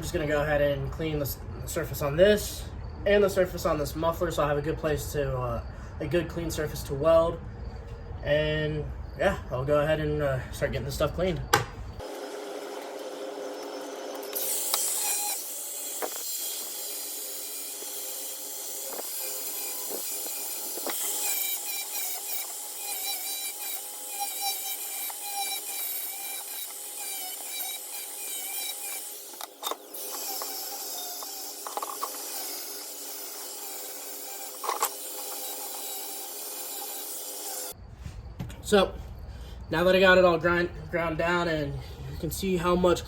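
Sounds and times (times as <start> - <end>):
electric grinder grinding steel: 12.0 - 37.8.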